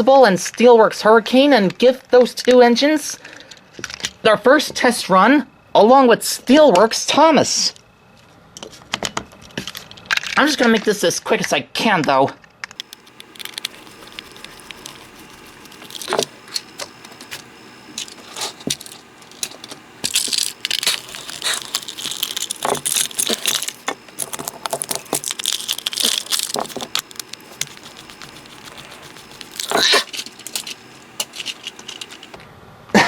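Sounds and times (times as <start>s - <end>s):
plastic toy clicks and rattles: 12.8s - 17.3s, 18.0s - 32.4s.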